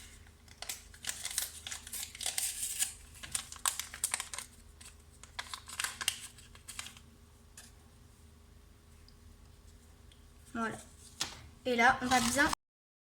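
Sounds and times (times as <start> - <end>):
paper sachet crinkling: 0.0 - 7.1, 12.0 - 12.6.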